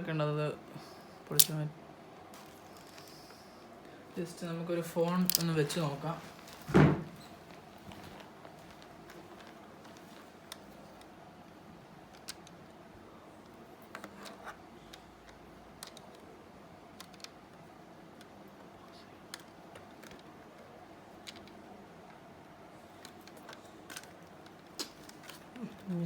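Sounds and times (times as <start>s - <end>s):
plastic headset clicks and knocks: 5.1s - 5.8s.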